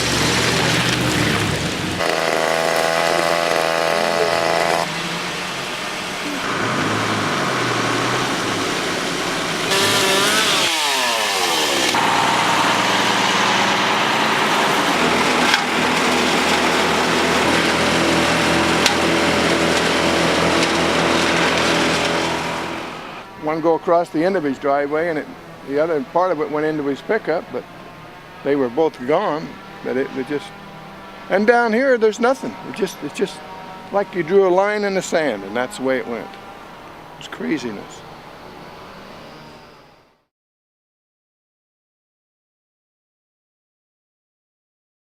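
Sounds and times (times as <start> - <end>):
chainsaws: 0.0 - 23.3, 27.6 - 36.8
engine sweeping up and down in pitch: 0.0 - 40.3
engines and power equipment running: 0.0 - 40.3.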